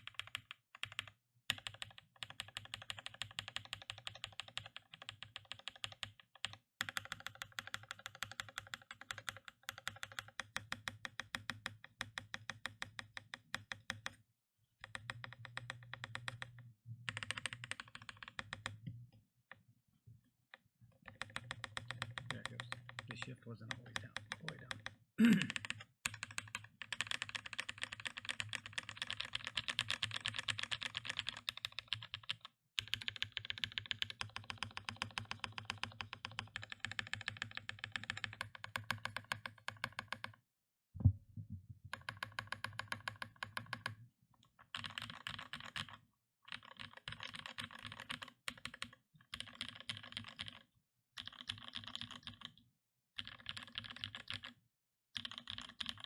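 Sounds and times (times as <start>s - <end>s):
fast typing on mechanical keyboard: 0.0s - 14.1s, 14.8s - 18.8s, 21.1s - 40.4s, 42.0s - 44.0s, 44.6s - 52.6s, 53.2s - 54.6s, 55.2s - 56.0s.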